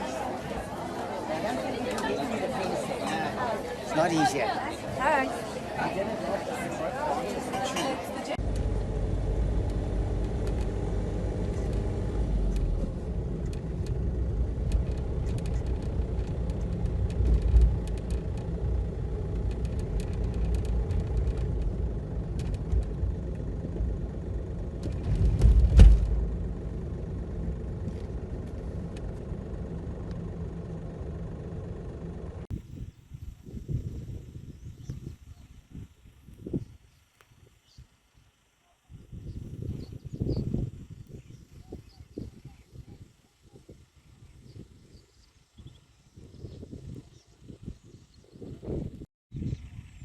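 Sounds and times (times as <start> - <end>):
low bumps: 0.0 - 32.6
vehicle running and road rumble: 0.0 - 43.2.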